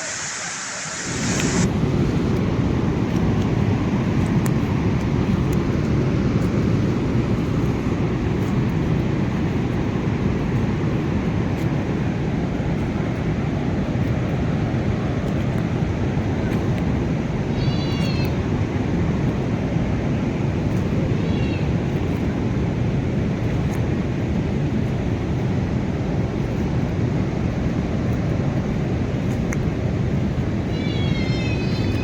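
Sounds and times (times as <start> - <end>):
flooded river roaring: 0.0 - 32.0.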